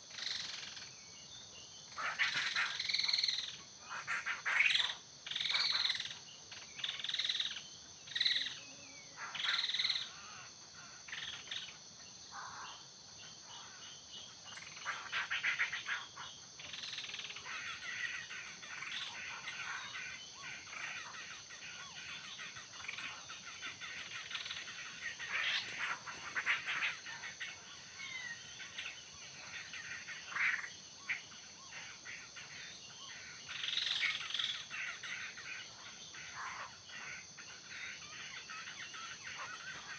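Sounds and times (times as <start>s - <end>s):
high insect drone: 0.0s - 39.9s
birds calling in bursts: 21.8s - 29.6s.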